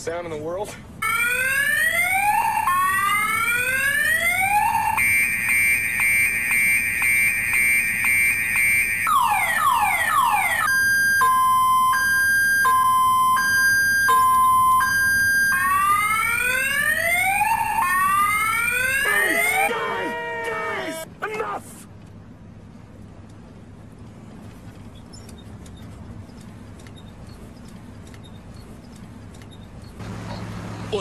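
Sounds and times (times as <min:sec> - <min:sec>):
car alarm cycling tones: 0:01.0 - 0:21.0.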